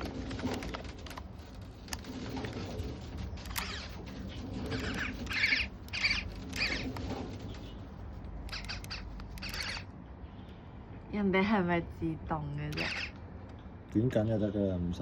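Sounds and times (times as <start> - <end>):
squeaky film advance chirps: 3.5 - 4.0, 4.7 - 7.0, 8.5 - 9.9, 12.7 - 13.2.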